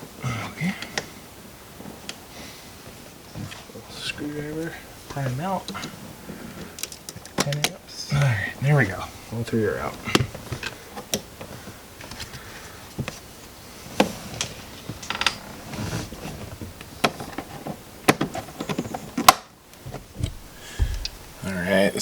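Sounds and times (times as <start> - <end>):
small parts rattling: 5.1 - 8.2.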